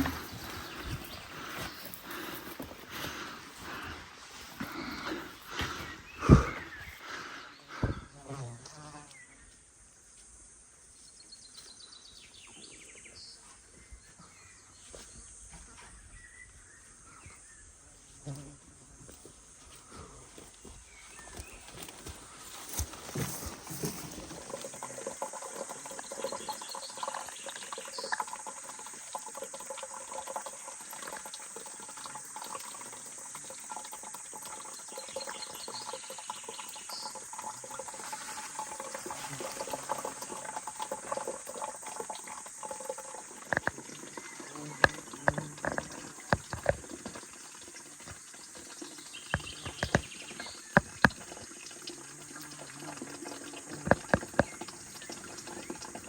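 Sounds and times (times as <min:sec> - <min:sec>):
water trickling: 0:00.0 - 0:08.1, 0:19.1 - 0:56.0
hard objects knocking: 0:43.5 - 0:43.8, 0:44.8 - 0:46.9, 0:49.4 - 0:50.2.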